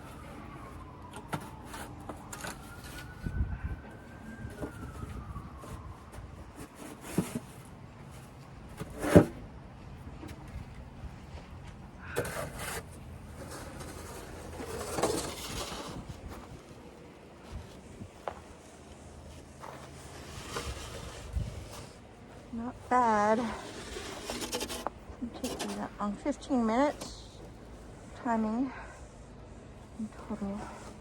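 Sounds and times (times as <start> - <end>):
snow shovel scraping: 12.1 - 16.0, 19.6 - 22.0, 22.9 - 27.2.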